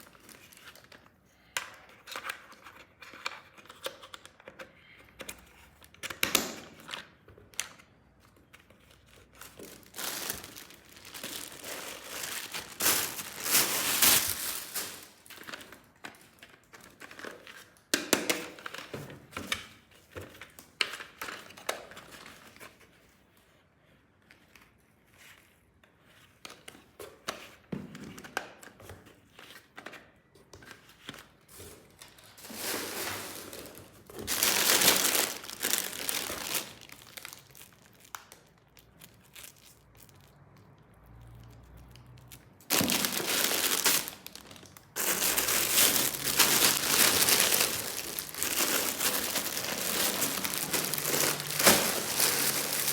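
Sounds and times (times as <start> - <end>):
packaging crinkled and torn: 0.0 - 1.1, 8.7 - 18.9, 31.8 - 52.9
plastic parts clicking and knocking: 1.6 - 7.8.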